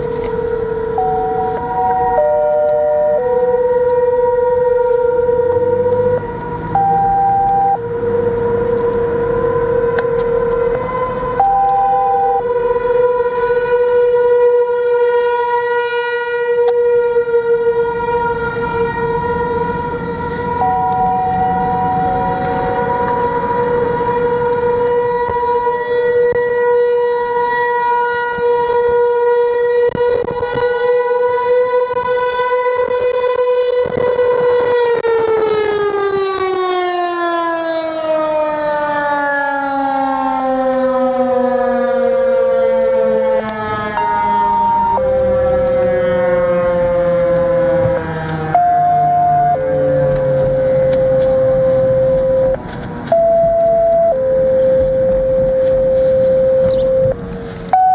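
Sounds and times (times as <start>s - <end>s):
warning siren steady tone: 0.0s - 57.9s.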